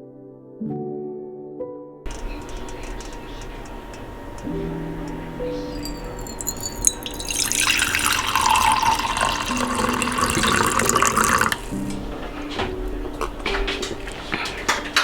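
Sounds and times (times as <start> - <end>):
water running from a tap: 2.1 - 5.2, 5.8 - 12.0.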